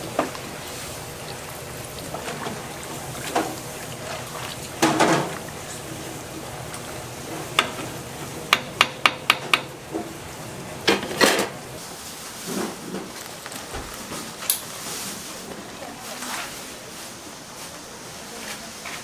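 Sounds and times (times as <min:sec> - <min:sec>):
utensils and dishes clattering: 0:00.0 - 0:06.0.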